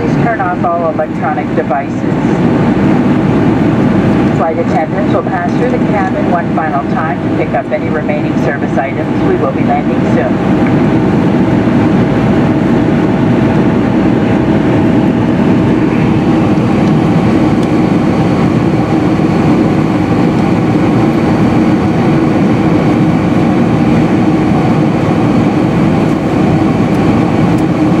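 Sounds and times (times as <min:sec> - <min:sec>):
jet engines and airflow rumble: 0:00.0 - 0:28.0.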